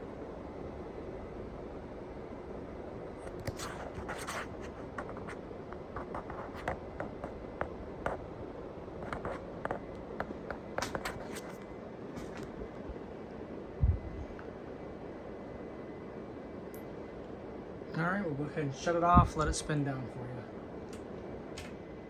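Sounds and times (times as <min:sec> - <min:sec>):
ceiling fan humming: 0:00.0 - 0:22.0
light irregular clicks and scrapes: 0:03.3 - 0:08.2, 0:09.0 - 0:12.5.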